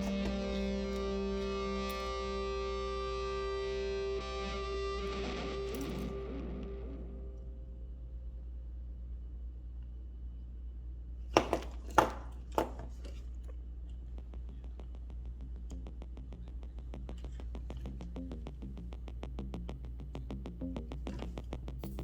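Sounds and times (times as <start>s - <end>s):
music with ticking beat and bass: 14.0s - 22.0s.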